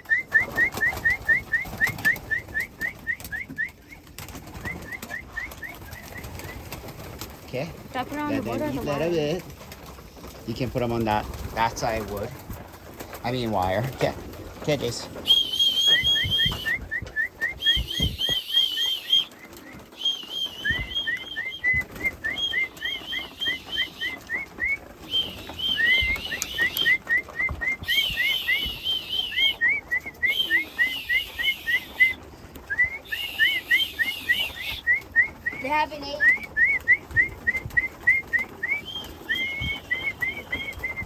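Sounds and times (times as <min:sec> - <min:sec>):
warbled whistles: 0:00.0 - 0:06.7, 0:15.2 - 0:41.0
pigeon wings flapping: 0:00.0 - 0:41.0
short rising whistles: 0:15.3 - 0:19.3, 0:20.0 - 0:35.3, 0:36.6 - 0:41.0.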